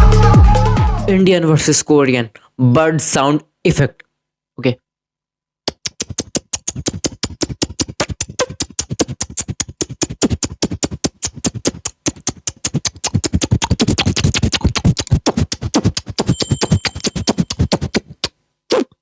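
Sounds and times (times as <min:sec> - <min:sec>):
beatboxed mouth clicks and pops: 0:05.6 - 0:19.0.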